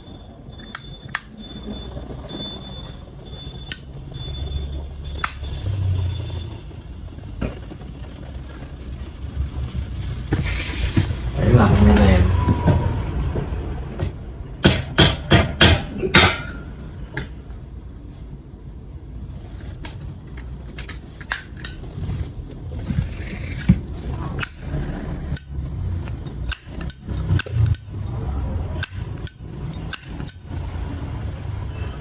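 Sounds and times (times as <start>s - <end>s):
bright ring from lighter case: 0.7s - 1.4s, 3.7s - 4.0s, 21.3s - 22.2s, 25.4s - 25.7s, 26.4s - 28.2s, 28.8s - 30.6s
lighter lid clacking: 26.5s - 28.1s, 28.8s - 30.5s.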